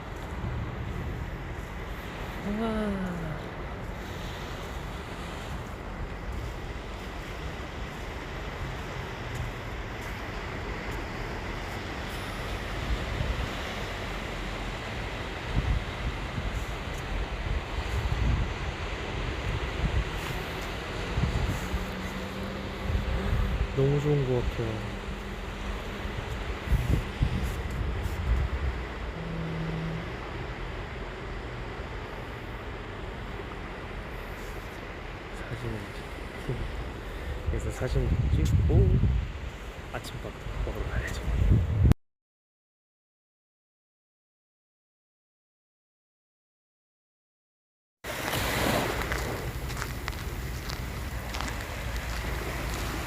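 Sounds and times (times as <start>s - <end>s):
wind blowing across microphone: 0.0s - 2.6s, 3.4s - 31.5s, 33.1s - 42.0s, 48.1s - 53.0s
sea surf hiss: 0.0s - 37.5s, 48.1s - 53.0s.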